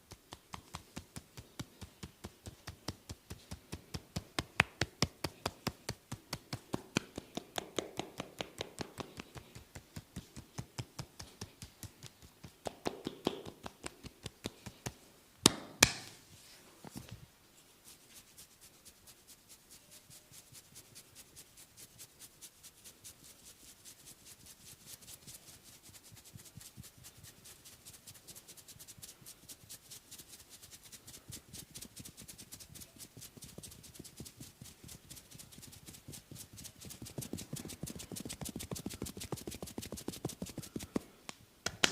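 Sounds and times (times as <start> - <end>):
rapid massage tapping: 0.0 - 16.0, 20.5 - 41.9
sharp slaps: 4.4 - 9.5, 10.8 - 16.2, 41.6 - 41.9.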